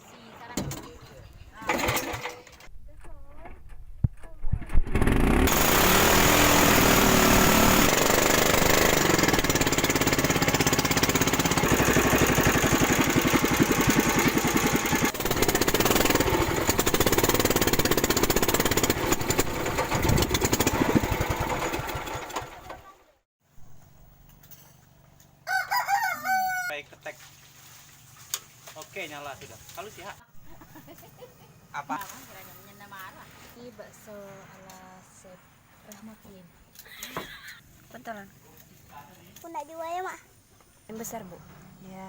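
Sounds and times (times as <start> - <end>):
rooster crowing: 25.4 - 26.8.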